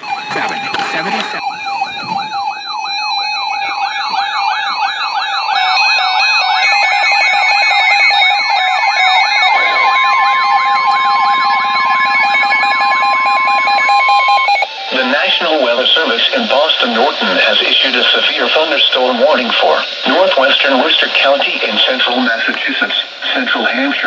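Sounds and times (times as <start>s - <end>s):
chirping data bursts: 0.0s - 18.9s
single-pitch warning alarm tone: 0.0s - 18.9s
warbling siren-like alarm: 0.0s - 23.0s.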